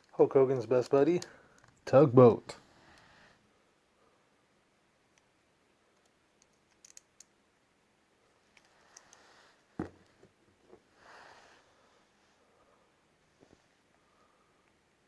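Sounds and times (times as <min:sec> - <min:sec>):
plastic figure clicks: 0:06.0 - 0:07.3.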